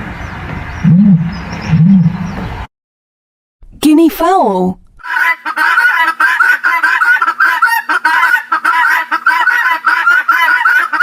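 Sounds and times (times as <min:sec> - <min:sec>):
guinea fowl calling: 0:05.0 - 0:11.0.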